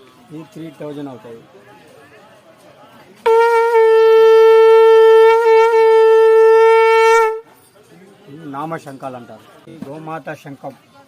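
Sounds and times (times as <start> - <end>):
conch shell blown: 3.2 - 7.5.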